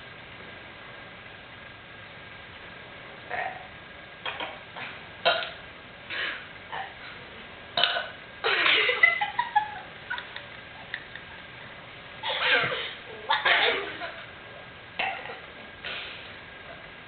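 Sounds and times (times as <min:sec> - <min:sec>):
person burping: 0:05.2 - 0:07.0, 0:07.8 - 0:08.2.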